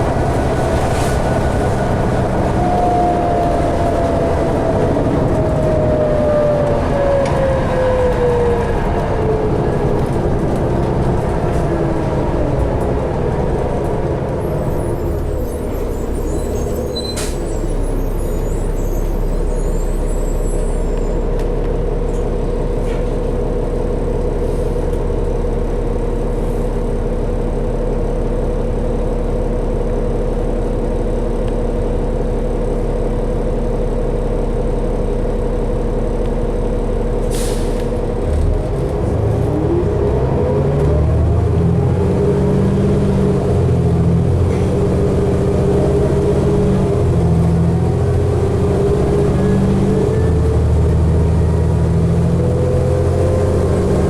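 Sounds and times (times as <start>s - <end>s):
bus diesel engine idling: 0.0s - 6.8s, 8.2s - 39.9s, 42.8s - 54.0s
bus accelerating with rising whine: 0.0s - 54.0s
air brakes hissing: 15.2s - 20.9s, 37.2s - 37.9s.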